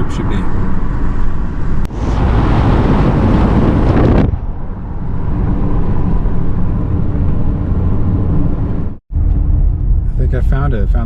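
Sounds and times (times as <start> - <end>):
car engine and tyre rumble: 0.0 - 11.0
loud rushing noise: 1.9 - 8.4.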